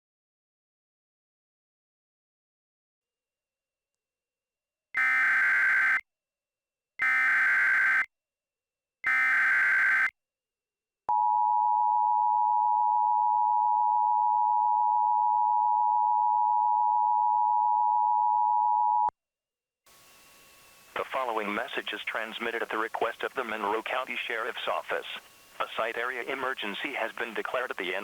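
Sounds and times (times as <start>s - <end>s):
digital data tone bursts: 21.0s - 28.0s.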